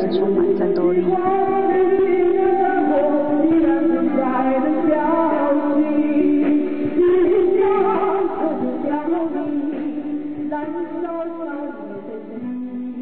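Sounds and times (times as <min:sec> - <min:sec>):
instrumental accompaniment: 0:00.0 - 0:13.0
opera singing with wavering notes: 0:00.0 - 0:13.0.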